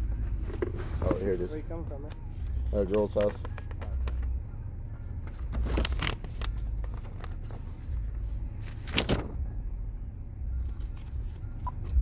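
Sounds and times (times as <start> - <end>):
handling rustles and clicks: 2.1 - 4.4, 5.2 - 8.0.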